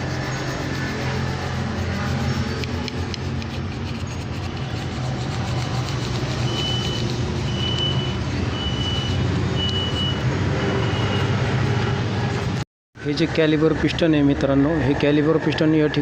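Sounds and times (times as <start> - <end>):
reversing alarm beeping: 6.4 - 11.5.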